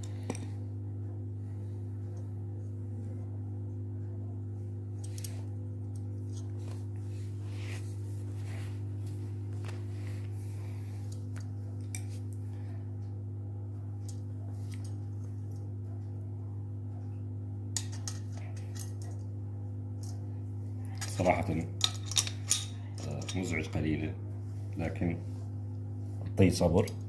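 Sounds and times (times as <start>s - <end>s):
steady low hum: 0.0s - 27.0s
metal tools clicking and scraping: 17.8s - 19.2s, 20.9s - 23.7s.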